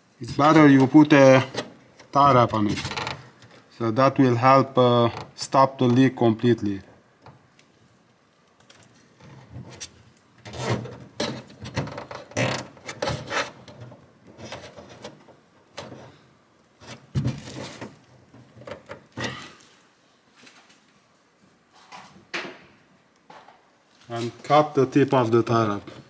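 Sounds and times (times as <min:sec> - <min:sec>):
handling plastic parts: 0:00.4 - 0:03.7.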